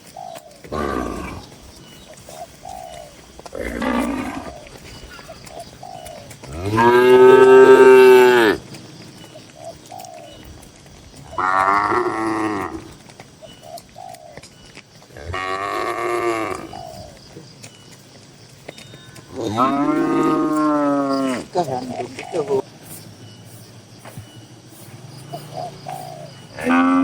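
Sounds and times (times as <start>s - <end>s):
cattle mooing: 3.5s - 4.6s, 6.4s - 8.6s, 11.3s - 13.0s, 15.2s - 16.8s, 19.3s - 21.7s, 26.6s - 27.0s.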